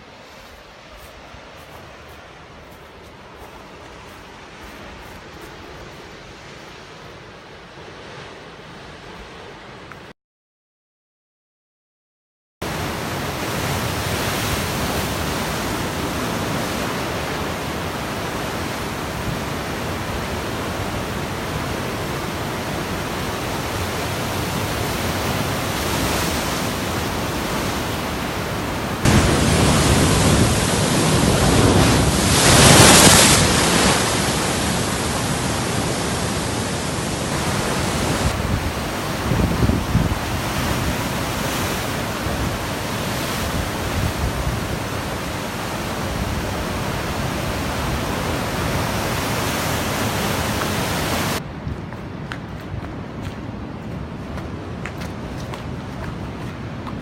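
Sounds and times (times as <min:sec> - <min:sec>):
closer water rush: 0:00.0 - 0:10.1, 0:12.6 - 0:51.5
waterfall rushing: 0:12.6 - 0:51.4.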